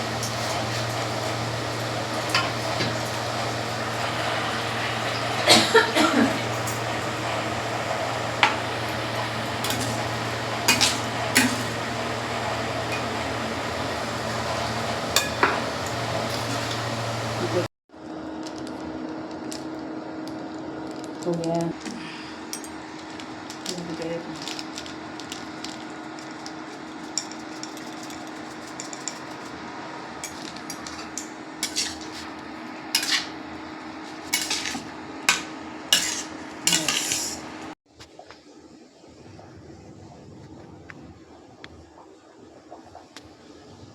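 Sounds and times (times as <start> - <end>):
utensil clinking on cooking pot: 8.4 - 13.4, 15.1 - 16.9, 30.2 - 32.2
metal spoon scraping a pan: 8.4 - 16.9, 26.9 - 29.6, 30.2 - 33.4, 34.0 - 37.5.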